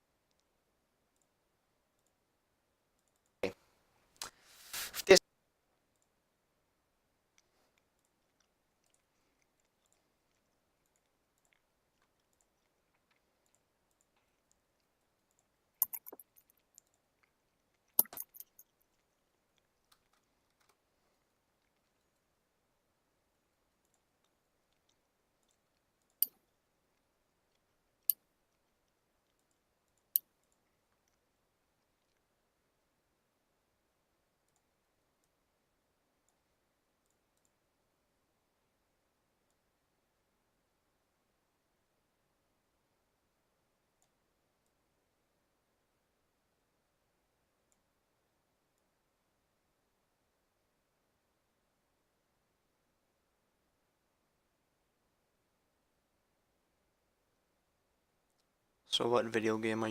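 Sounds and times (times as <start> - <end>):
keyboard and mouse clicking: 15.3 - 17.0, 18.0 - 18.7.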